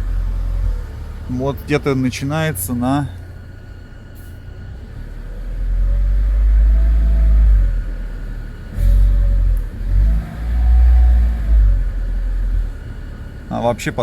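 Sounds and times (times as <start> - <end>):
car engine revving: 0.0 - 3.5, 4.7 - 14.0.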